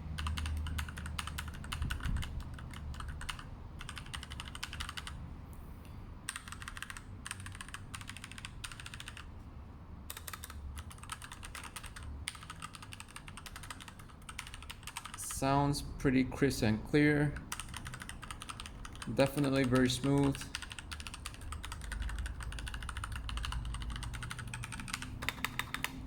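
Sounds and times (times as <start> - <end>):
mechanical keyboard typing: 0.2 - 5.2, 6.3 - 9.4, 10.1 - 15.4, 17.3 - 26.0.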